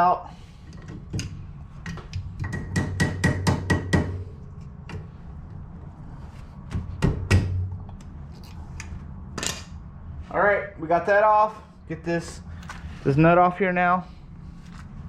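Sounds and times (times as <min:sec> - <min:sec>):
hammer tapping on metal: 0:02.1 - 0:04.3.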